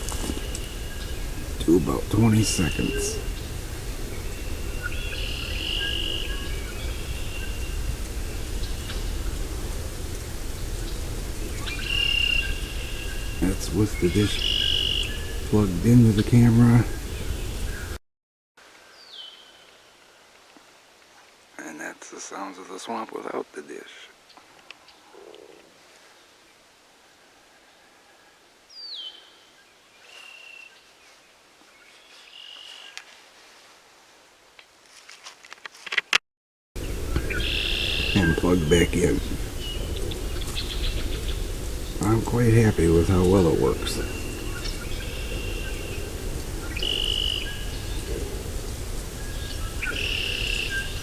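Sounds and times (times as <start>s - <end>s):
faint background hiss: 0.0s - 17.9s, 36.8s - 51.0s
steady low rumble: 0.0s - 18.0s, 36.8s - 51.0s
high whistled animal calls: 11.6s - 15.6s.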